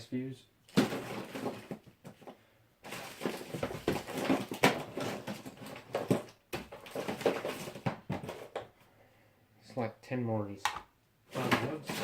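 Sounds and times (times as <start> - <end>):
rummaging through plastic and metal parts: 0.7 - 8.7, 11.3 - 12.0.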